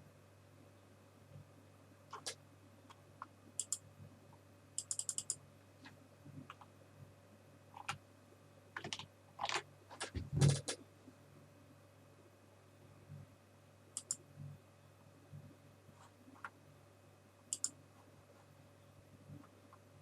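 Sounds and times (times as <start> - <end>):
faint steady hum: 0.0 - 20.0
keyboard typing: 2.1 - 3.0, 3.6 - 3.8, 4.8 - 5.4, 7.7 - 8.0, 8.8 - 10.8, 14.0 - 14.2, 17.5 - 17.8.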